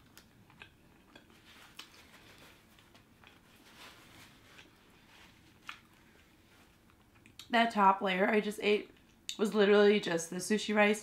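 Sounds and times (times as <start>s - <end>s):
close-up chewing: 0.0s - 3.7s.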